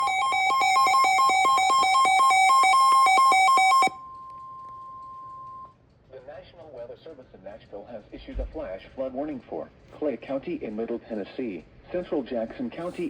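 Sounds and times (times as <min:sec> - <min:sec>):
rapid two-pitch alert beeping: 0:00.0 - 0:04.0.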